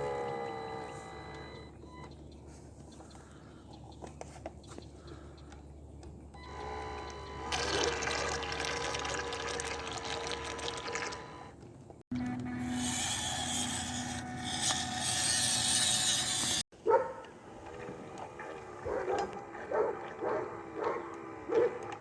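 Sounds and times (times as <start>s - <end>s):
small electric motor whine: 0.0s - 1.8s, 6.4s - 16.7s.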